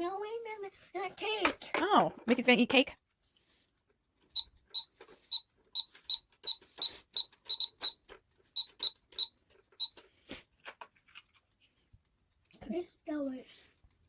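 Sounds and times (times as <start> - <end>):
plastic clicks: 1.2 - 2.5, 4.1 - 11.6
toy cash register beeping: 4.2 - 10.1.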